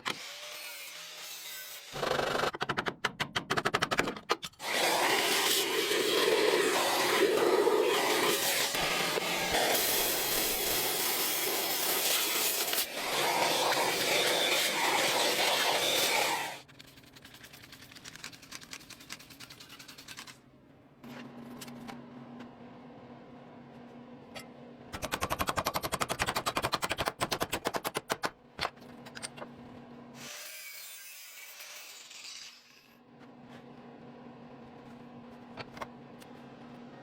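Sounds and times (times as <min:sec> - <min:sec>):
power tool hammering: 0:25.0 - 0:28.4.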